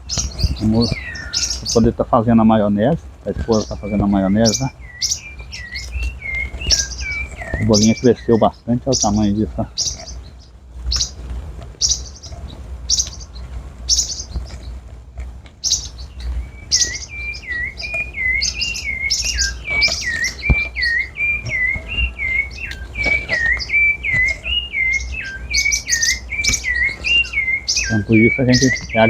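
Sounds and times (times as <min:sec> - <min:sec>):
songbirds chirping: 0:00.0 - 0:29.0
thrush whistled notes: 0:03.5 - 0:08.4, 0:16.2 - 0:29.0.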